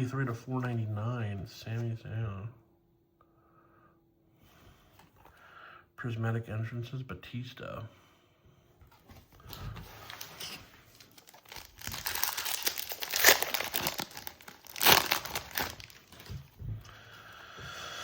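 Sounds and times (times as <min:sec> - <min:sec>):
foil wrapper crinkling and tearing: 0:10.0 - 0:16.4.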